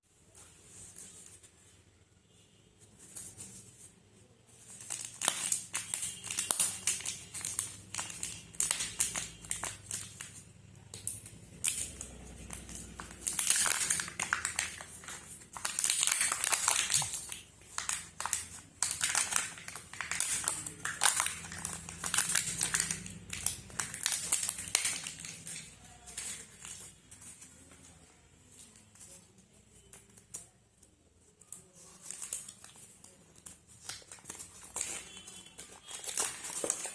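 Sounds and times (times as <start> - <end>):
wrappers crinkling and tearing: 4.5 - 27.9, 31.2 - 36.9.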